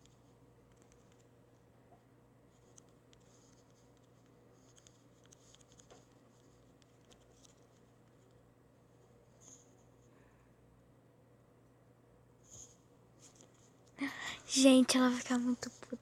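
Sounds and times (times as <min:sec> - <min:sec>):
fingers typing on touchscreen: 0:00.0 - 0:01.3, 0:02.5 - 0:08.4.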